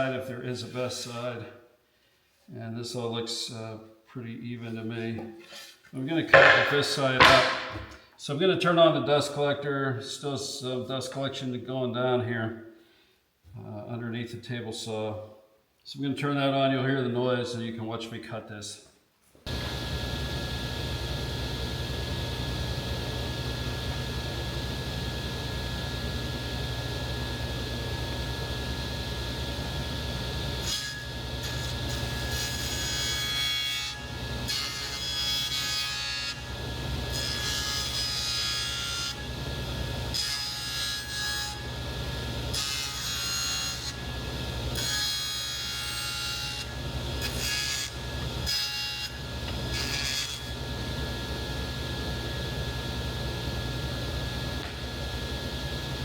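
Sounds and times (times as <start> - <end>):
saw blade cutting wood: 5.4 - 8.0
table saw running: 6.4 - 8.0, 19.5 - 56.0
dust collector humming: 19.5 - 32.2, 50.6 - 56.0.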